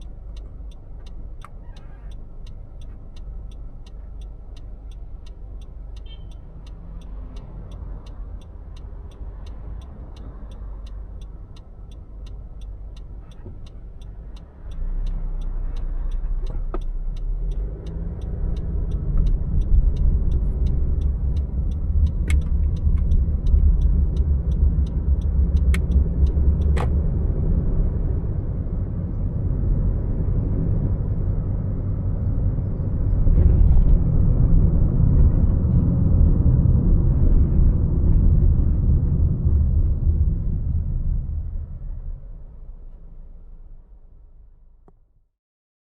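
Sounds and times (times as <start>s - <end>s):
light ticking: 0.0s - 26.9s
car engine and road rumble: 0.0s - 45.3s
sharp clicks: 15.8s - 27.0s.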